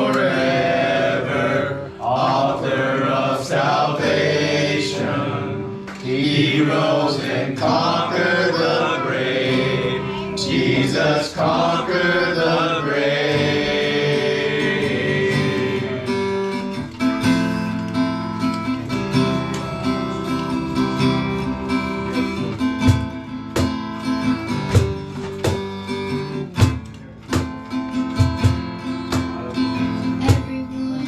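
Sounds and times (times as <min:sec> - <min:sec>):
acoustic guitar strumming: 0:00.0 - 0:31.0
sustained accompaniment with beat: 0:20.8 - 0:30.3.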